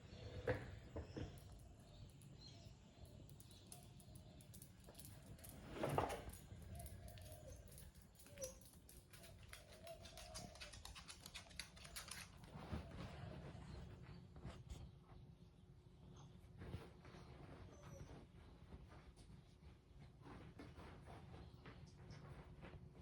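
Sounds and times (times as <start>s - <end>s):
dog scratching at dirt: 8.3s - 12.7s.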